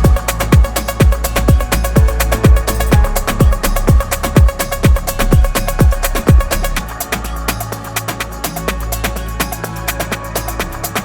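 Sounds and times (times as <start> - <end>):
hi-hat ticks: 0.0 - 11.0
kick drum: 0.0 - 11.0
held bass note: 1.4 - 6.6.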